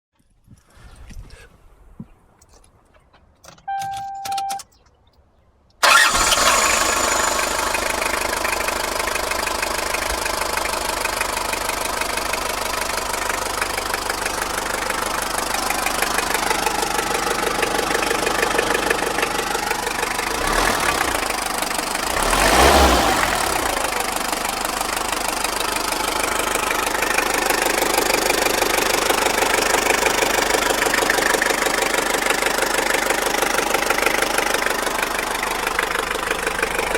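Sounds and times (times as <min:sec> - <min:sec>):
short beep: 0:03.7 - 0:04.8
car engine idling with knocking: 0:05.8 - 0:36.9.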